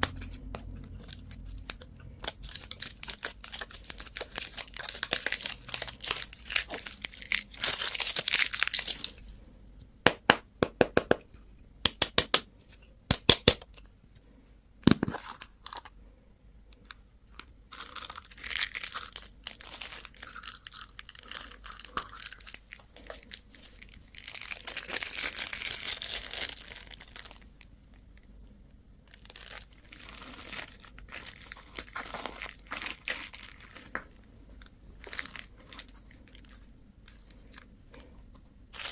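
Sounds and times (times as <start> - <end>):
plastic packaging crinkling and tearing: 0.0 - 9.4, 14.8 - 16.0, 16.8 - 28.3, 29.0 - 38.9.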